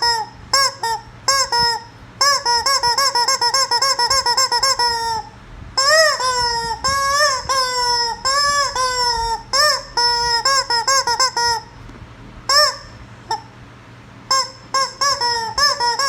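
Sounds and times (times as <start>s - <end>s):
rubber chicken toy squawking: 0.0s - 11.8s, 12.5s - 13.6s, 14.3s - 16.0s.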